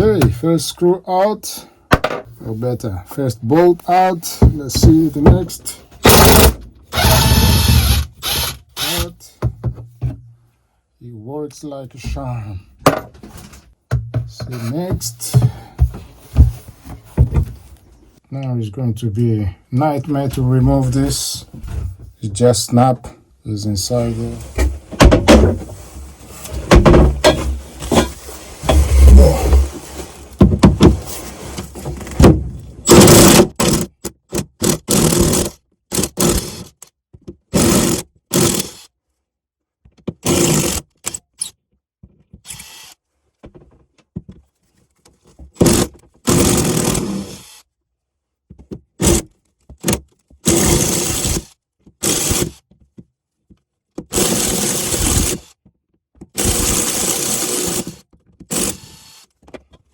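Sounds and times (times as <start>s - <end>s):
power tool bursts: 6.0s - 9.1s, 56.4s - 59.2s
metal scraping and knocking: 26.5s - 31.1s.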